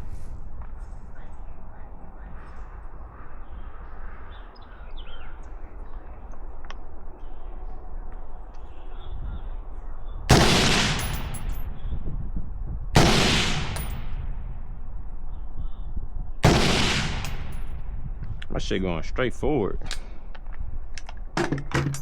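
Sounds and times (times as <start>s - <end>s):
gunshots with echoing tail: 10.3s - 11.8s, 13.0s - 14.7s, 16.4s - 17.9s.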